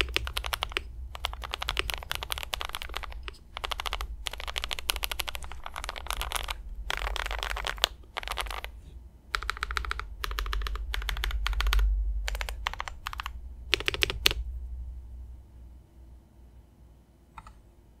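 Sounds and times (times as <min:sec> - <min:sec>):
typing on mechanical keyboard: 0:00.0 - 0:08.7, 0:09.3 - 0:14.4.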